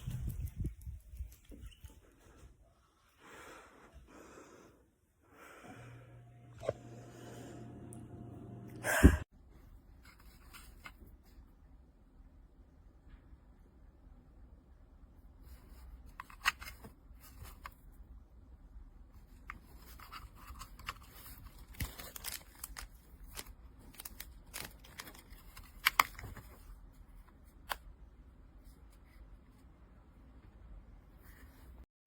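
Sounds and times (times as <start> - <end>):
handling noise clicks and scrapes: 19.2 - 27.9.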